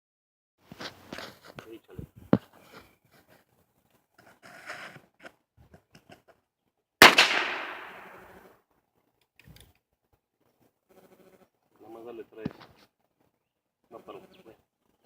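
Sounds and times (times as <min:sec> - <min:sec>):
revolver shot with echo: 0:07.0 - 0:08.4
faint small clicks: 0:09.2 - 0:09.9.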